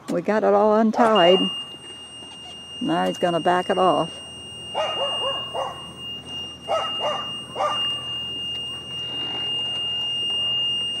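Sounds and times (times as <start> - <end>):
high-pitched reverse warning buzzer: 1.1 - 11.0
dog barking: 4.8 - 5.9, 6.7 - 7.9.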